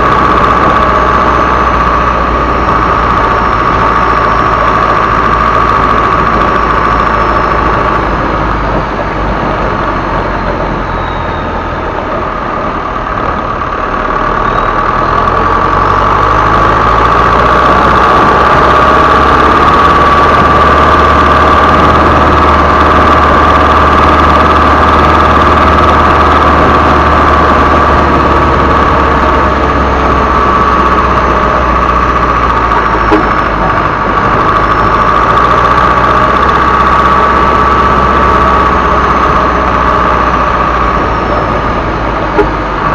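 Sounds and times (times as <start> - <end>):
diesel truck engine running: 0.0 - 42.9
high turbo whistle: 10.6 - 11.7.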